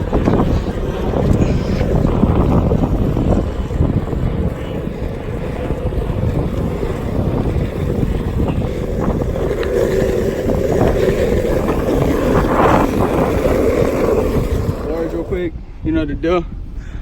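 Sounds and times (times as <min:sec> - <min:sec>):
skateboard wheels rolling on pavement: 0:00.0 - 0:15.6
wind buffeting microphone: 0:00.0 - 0:17.0.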